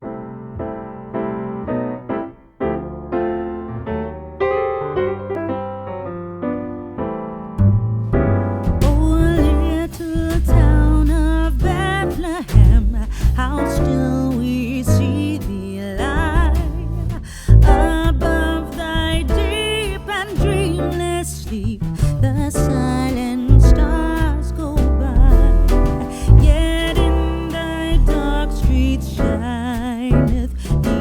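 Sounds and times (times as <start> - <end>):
solo piano notes: 0.0 - 31.0.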